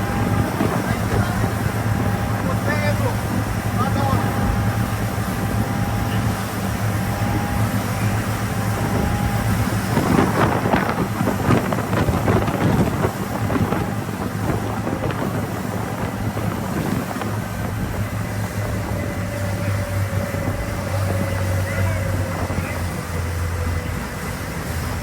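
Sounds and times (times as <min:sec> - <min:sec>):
boat engine running: 0:00.0 - 0:25.0
wind noise on microphone: 0:00.0 - 0:25.0.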